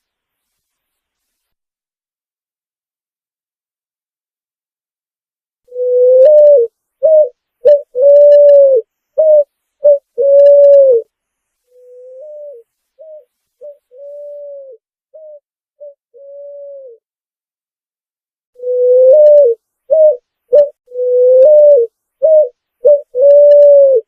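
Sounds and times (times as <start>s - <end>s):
pigeon cooing: 5.7s - 11.1s, 11.8s - 17.0s, 18.6s - 24.0s.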